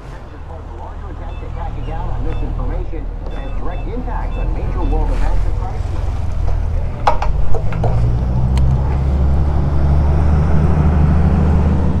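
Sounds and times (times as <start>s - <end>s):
motorcycle engine idling: 0.0s - 12.0s
sharp clicks: 6.2s - 9.0s.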